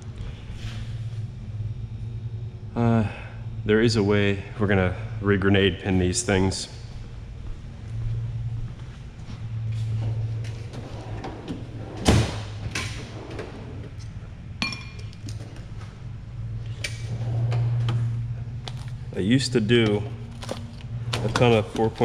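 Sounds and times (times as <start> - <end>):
steady low hum: 0.0 - 22.0
ringing metallic ping: 14.6 - 15.0.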